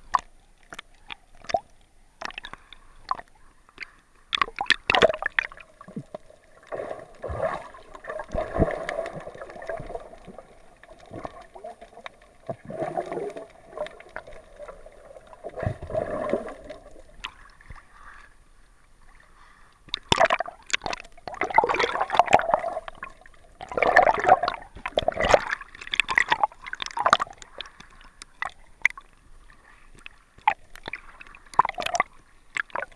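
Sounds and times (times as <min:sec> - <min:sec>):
sloshing and clicking: 0:00.1 - 0:17.8, 0:19.9 - 0:29.1
water gurgling and splashing: 0:04.3 - 0:18.0, 0:19.9 - 0:29.2, 0:30.1 - 0:32.9.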